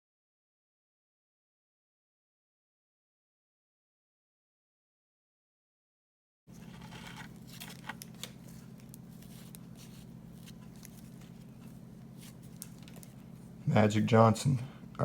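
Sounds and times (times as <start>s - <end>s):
card wrapper crinkling: 6.5s - 13.4s
steady low hum: 6.5s - 15.0s.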